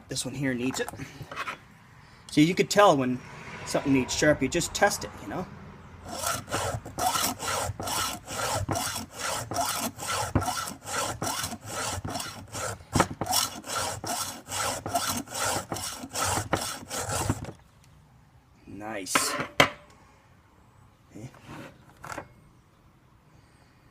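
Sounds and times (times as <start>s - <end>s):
file rasping on chain: 6.1s - 17.5s.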